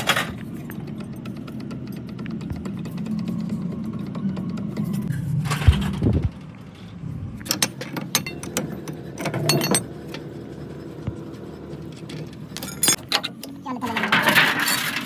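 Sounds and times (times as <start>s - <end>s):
metallic clinks and clicks: 12.6s - 13.3s.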